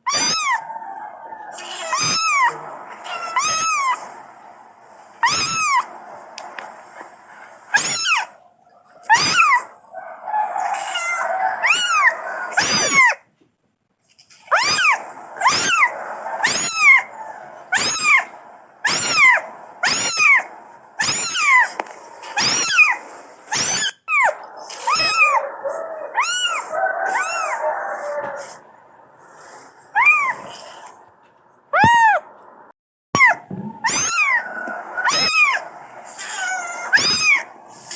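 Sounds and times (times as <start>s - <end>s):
kitten meowing: 0.0s - 0.6s, 1.6s - 4.0s, 5.2s - 5.9s, 7.8s - 8.3s, 10.8s - 13.2s, 14.5s - 17.1s, 17.7s - 21.7s, 22.4s - 25.4s, 26.2s - 27.5s, 30.0s - 30.6s, 31.8s - 32.2s, 33.2s - 34.4s, 35.0s - 37.5s.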